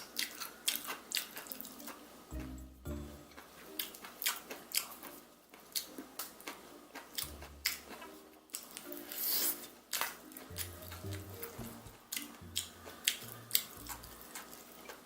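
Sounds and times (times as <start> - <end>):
crunching fried chicken: 0.0 - 2.1, 3.4 - 15.0.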